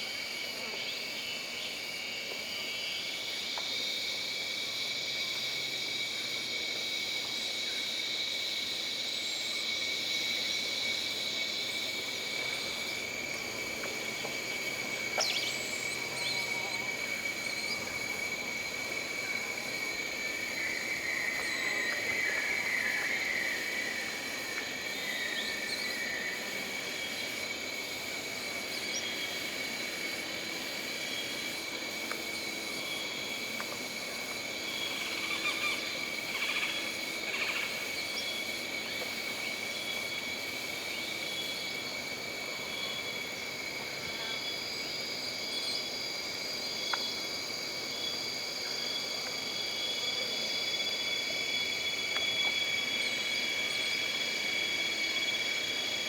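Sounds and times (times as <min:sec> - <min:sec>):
high insect chorus: 0:00.0 - 0:56.0
insect drones: 0:00.0 - 0:56.0.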